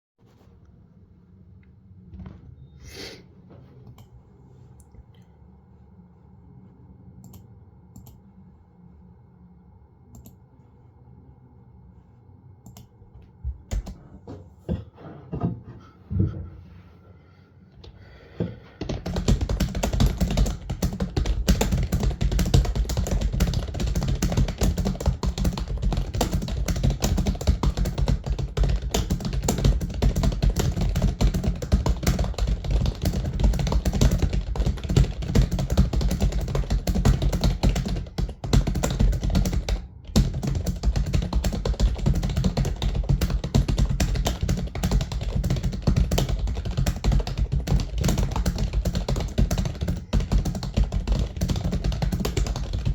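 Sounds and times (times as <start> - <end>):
fast typing on computer keyboard: 13.7 - 14.0, 18.8 - 52.9.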